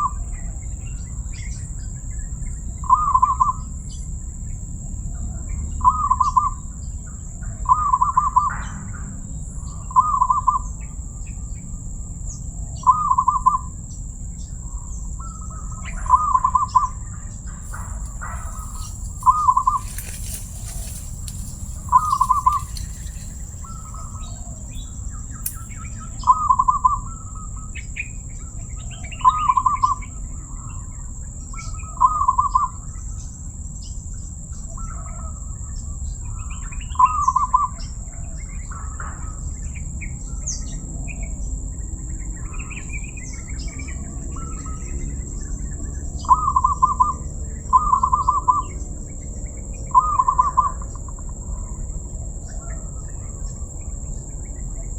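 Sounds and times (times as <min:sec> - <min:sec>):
dove cooing: 0:17.6 - 0:24.9.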